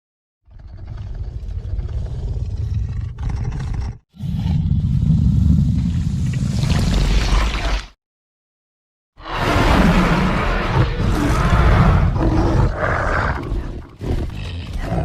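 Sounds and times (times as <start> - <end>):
deep dinosaur roar: 9.2 - 15.0.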